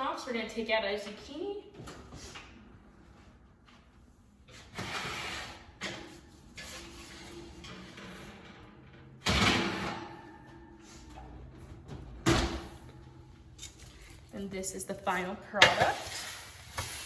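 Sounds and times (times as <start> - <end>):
oven door opening: 4.7 - 13.1.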